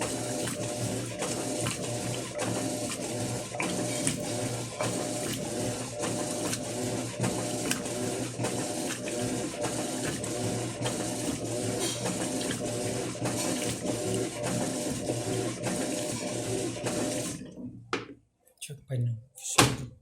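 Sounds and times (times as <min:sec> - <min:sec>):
water sloshing in drum: 0:00.0 - 0:17.2
washing machine motor whirring: 0:00.0 - 0:17.8.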